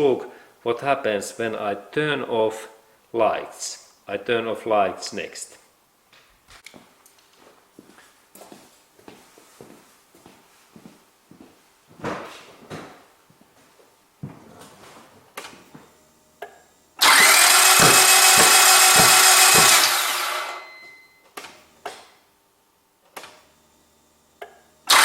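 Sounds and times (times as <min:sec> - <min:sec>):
starter motor cranking engine: 0:17.0 - 0:20.7.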